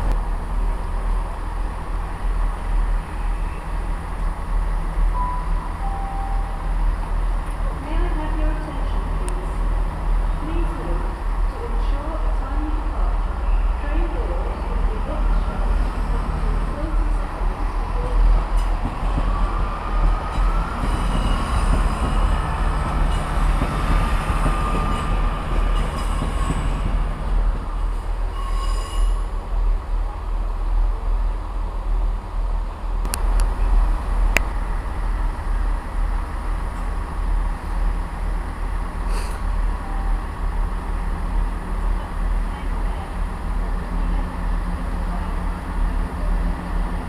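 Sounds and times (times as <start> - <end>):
train rumbling: 0.0 - 47.0
high wheel squeal: 28.2 - 29.4.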